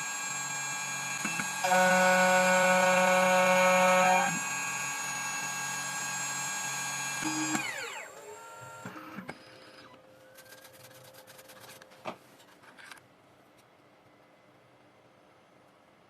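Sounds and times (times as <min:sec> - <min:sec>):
motor whine winding down: 0:00.0 - 0:10.0
faint machine whir: 0:00.0 - 0:16.0.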